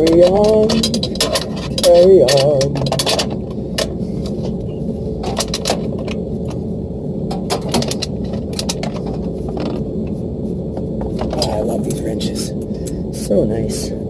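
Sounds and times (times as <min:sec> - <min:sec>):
ratcheting wrench clicking: 0:00.0 - 0:03.9
low machinery hum: 0:00.0 - 0:14.0.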